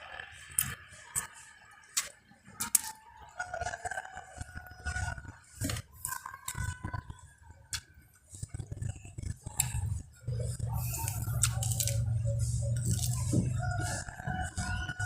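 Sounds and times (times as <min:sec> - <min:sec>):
person chewing: 0:00.5 - 0:01.3, 0:05.6 - 0:15.0.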